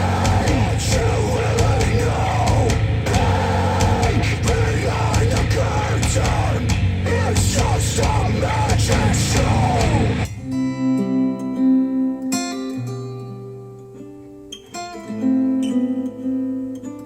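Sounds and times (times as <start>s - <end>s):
heavy rock music with shouted vocals: 0.0s - 10.3s
strummed acoustic guitar: 0.0s - 17.0s.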